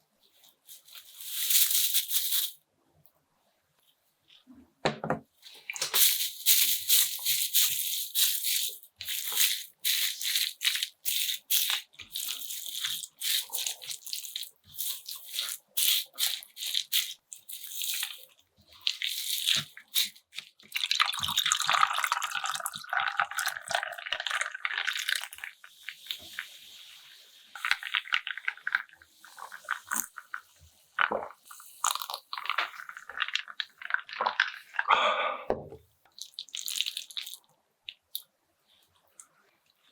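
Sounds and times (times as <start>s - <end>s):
crisp crackly chewing: 5.4s - 26.4s, 27.6s - 30.4s, 31.0s - 34.9s, 36.1s - 38.3s
wet squelchy chewing: 7.8s - 24.3s, 36.1s - 38.2s.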